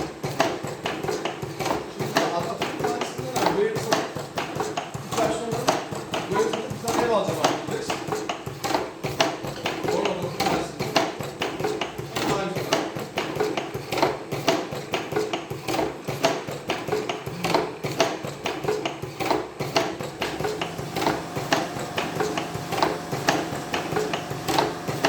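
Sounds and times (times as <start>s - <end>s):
cigarette rolling machine clacking: 0.0s - 25.0s.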